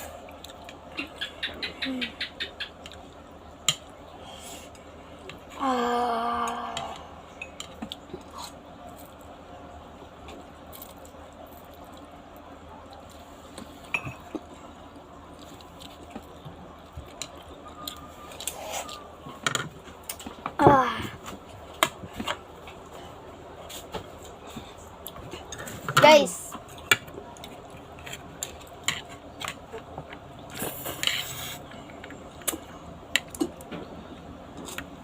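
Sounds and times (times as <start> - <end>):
person humming: 5.6 - 7.2.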